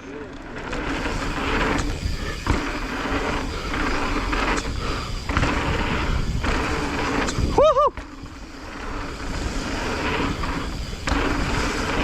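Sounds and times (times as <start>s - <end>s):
bike tyres rolling on dirt: 0.0s - 12.0s.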